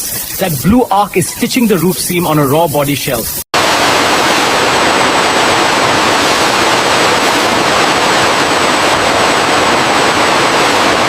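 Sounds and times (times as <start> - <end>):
welding arc hissing: 0.0 - 11.0.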